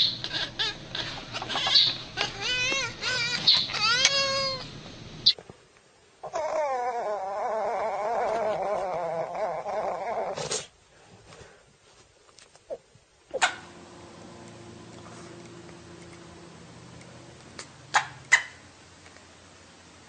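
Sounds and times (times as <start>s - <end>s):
cat meowing: 0.2s - 4.7s.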